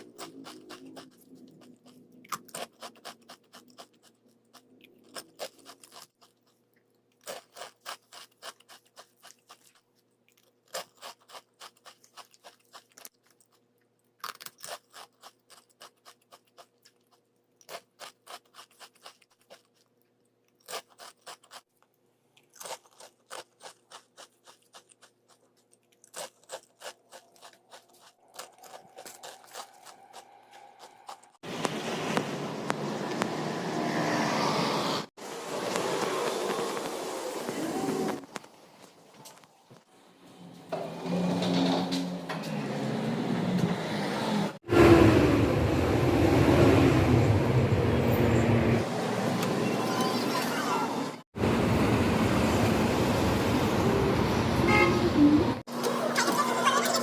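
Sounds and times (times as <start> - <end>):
crisp snack being chewed: 0.0 - 31.4.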